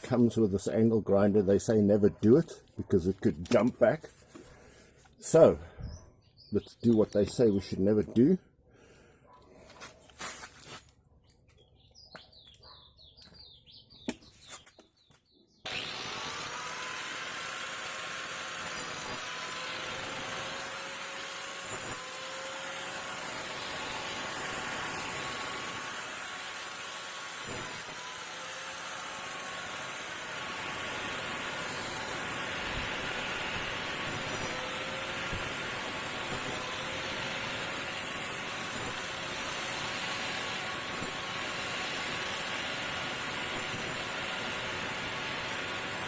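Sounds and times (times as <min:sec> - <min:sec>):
angle grinder cutting branches: 0:00.0 - 0:05.6, 0:09.5 - 0:10.9, 0:15.6 - 0:46.0
bird chirps: 0:05.8 - 0:07.8, 0:11.5 - 0:15.7.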